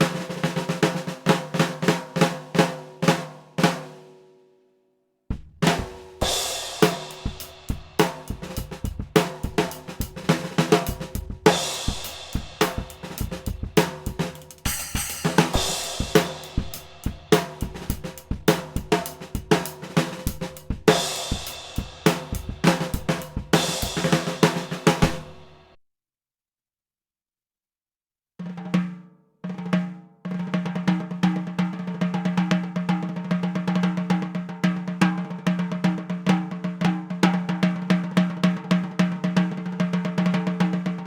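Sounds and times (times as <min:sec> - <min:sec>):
drum kit playing groove: 0:00.0 - 0:04.0, 0:05.3 - 0:25.8
crash cymbal ringing: 0:14.6 - 0:16.0.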